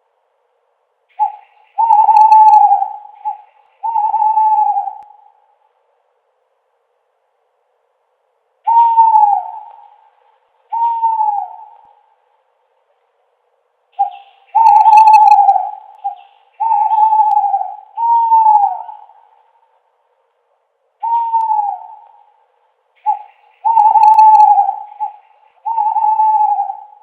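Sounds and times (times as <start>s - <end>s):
owl hooting: 1.1s - 5.6s, 8.6s - 12.3s, 14.0s - 19.8s, 21.0s - 27.0s.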